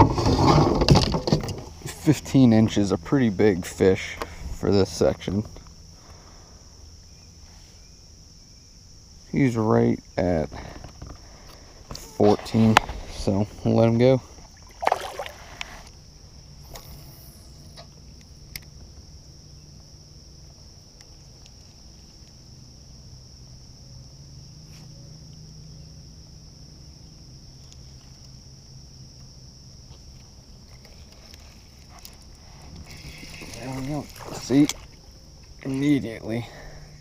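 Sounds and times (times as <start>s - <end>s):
crickets chirring: 0.0s - 37.0s.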